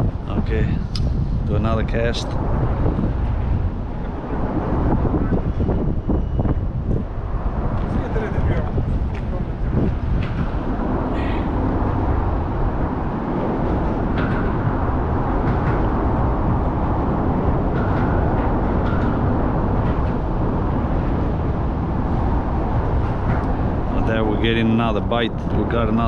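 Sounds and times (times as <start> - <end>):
wind blowing on microphone: 0.0 - 26.0.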